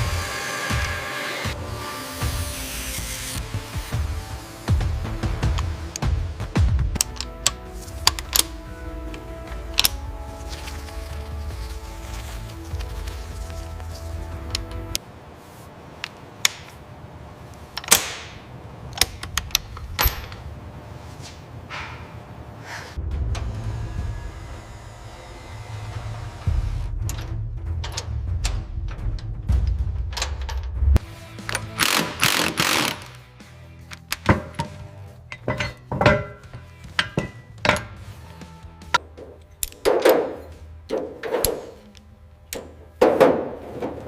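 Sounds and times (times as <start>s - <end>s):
background music: 0.0s - 15.0s, 23.0s - 44.0s
sharp clicks and knocks of tools: 7.0s - 8.5s, 39.3s - 40.1s.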